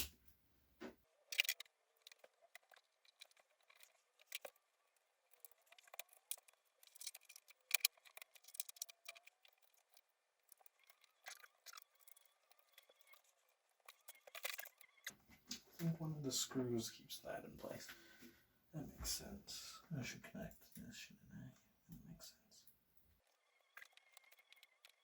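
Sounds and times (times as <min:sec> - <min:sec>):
small plastic and metal parts clicking: 0:01.3 - 0:15.6, 0:23.2 - 0:25.0.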